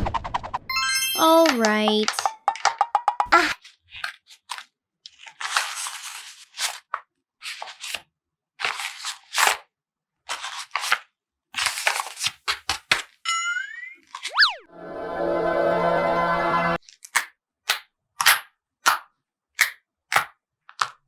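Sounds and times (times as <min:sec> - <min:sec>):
paper crinkling and cutting: 0:04.0 - 0:06.9.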